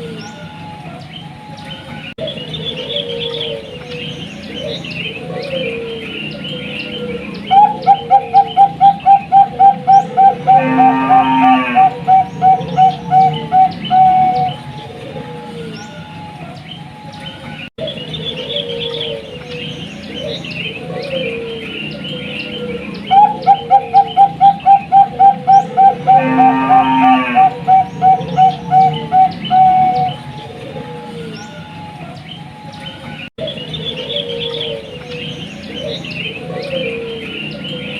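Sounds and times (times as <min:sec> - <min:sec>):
small birds chirping: 0:00.0 - 0:10.7, 0:11.8 - 0:26.4, 0:27.4 - 0:37.9
dove cooing: 0:02.2 - 0:16.6, 0:17.9 - 0:32.2, 0:33.4 - 0:37.9
harsh buzzing bird call: 0:07.5 - 0:14.7, 0:23.1 - 0:30.3.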